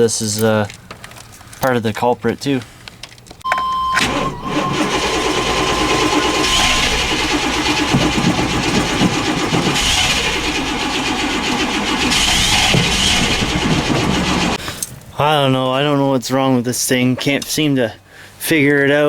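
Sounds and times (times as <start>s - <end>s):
steady high tone: 3.4s - 14.6s
engine cranking on starter: 3.5s - 14.6s.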